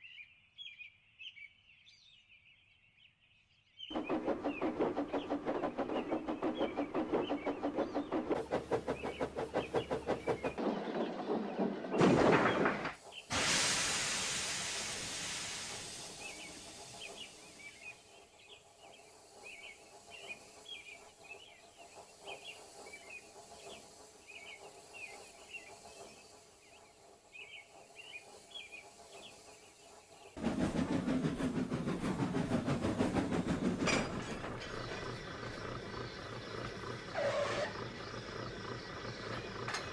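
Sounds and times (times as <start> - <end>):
steam train running rhythmically: 3.9 - 39.9
hiss of escaping steam: 13.0 - 34.9.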